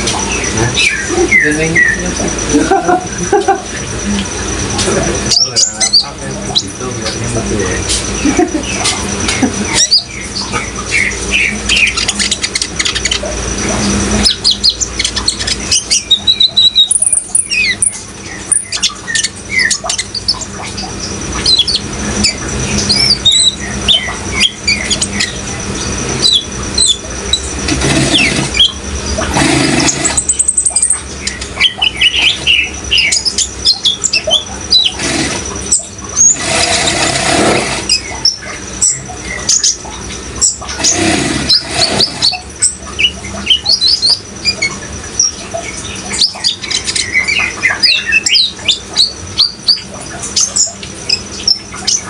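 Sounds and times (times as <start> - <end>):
birds chirping: 0.0 - 52.0
running water: 0.0 - 52.0.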